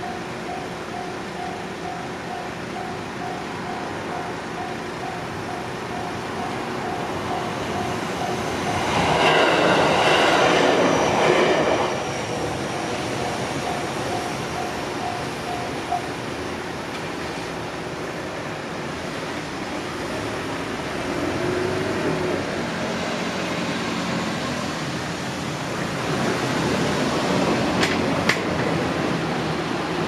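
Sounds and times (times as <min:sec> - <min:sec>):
level crossing alarm tones: 0:00.0 - 0:09.3, 0:12.4 - 0:16.2
steady rushing background noise: 0:00.0 - 0:30.0.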